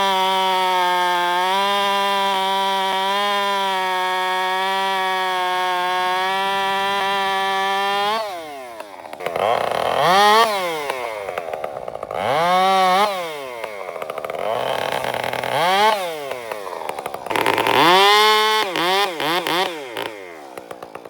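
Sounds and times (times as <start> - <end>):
chainsaw revving: 0.0 - 21.0.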